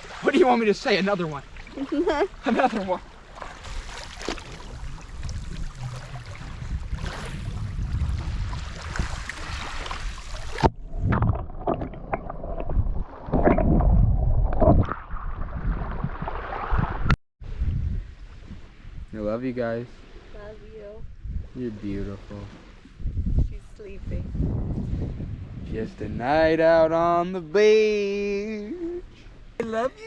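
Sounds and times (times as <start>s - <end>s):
waves washing over pebbles: 0.0s - 10.7s
wind on microphone: 3.6s - 27.2s.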